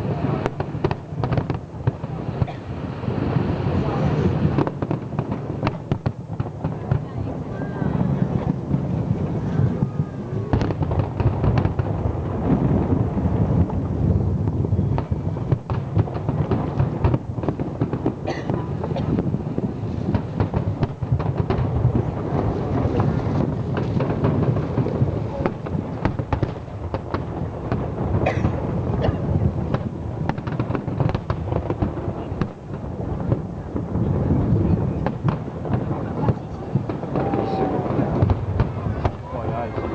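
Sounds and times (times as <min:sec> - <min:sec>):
fireworks bursts and bangs: 0:00.0 - 0:39.9.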